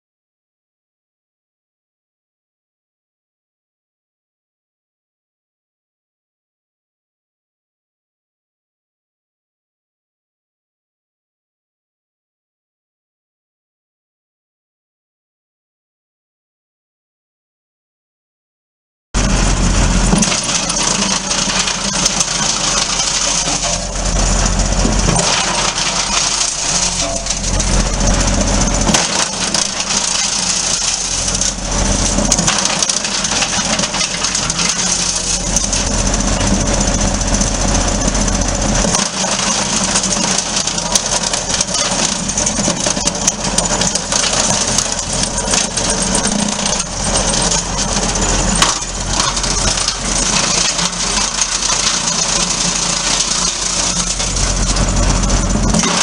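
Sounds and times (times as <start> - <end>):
tractor engine: 19.2 - 56.0
wood chipper running: 19.2 - 56.0.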